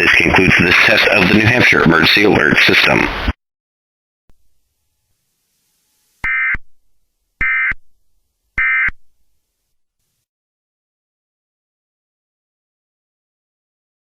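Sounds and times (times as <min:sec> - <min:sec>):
buzzing digital data tones: 0:04.8 - 0:06.8, 0:07.4 - 0:07.9, 0:08.6 - 0:09.1.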